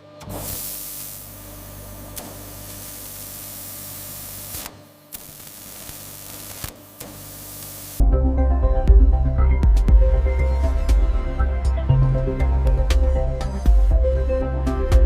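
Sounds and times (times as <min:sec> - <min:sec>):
hissing machine noise: 0:00.2 - 0:08.0
music: 0:08.0 - 0:15.0.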